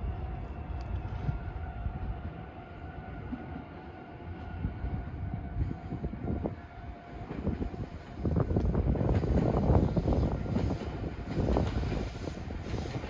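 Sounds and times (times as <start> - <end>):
electric train rumbling past: 0.0 - 13.0
train whine: 0.0 - 13.0
train knocking on rails: 7.1 - 13.0.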